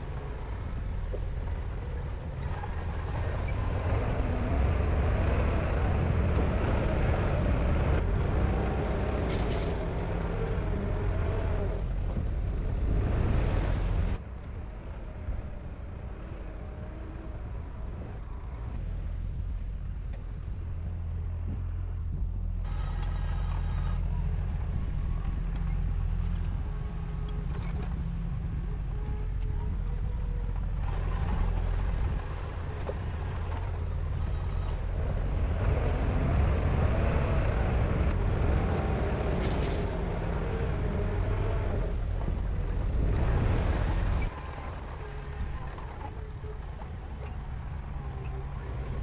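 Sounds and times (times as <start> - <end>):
diesel engine rumble: 0.0 - 49.0
machinery rattling and scraping: 9.0 - 10.8, 22.7 - 49.0.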